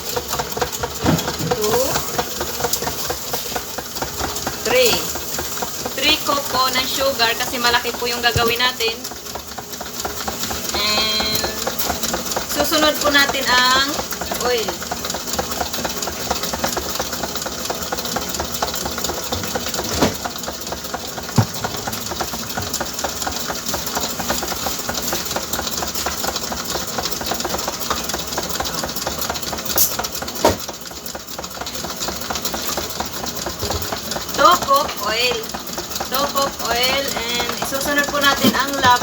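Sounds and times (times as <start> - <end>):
electric mixer running: 0.0 - 39.0
sharp knocks: 21.4 - 21.8.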